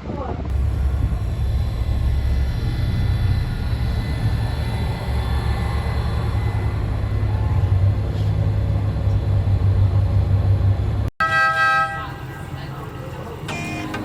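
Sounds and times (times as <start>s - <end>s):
motor rumbling with whine: 0.5s - 11.1s.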